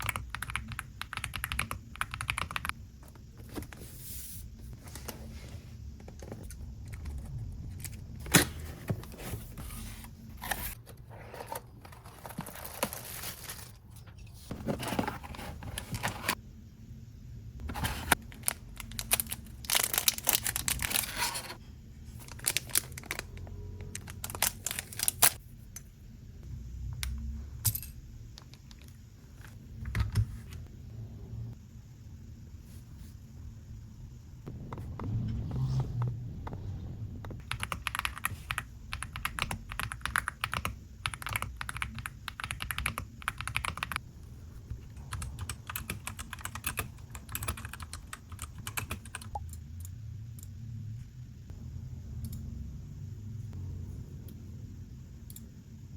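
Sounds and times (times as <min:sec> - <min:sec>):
plastic and paper crinkling: 0:11.4 - 0:13.8, 0:17.8 - 0:21.6.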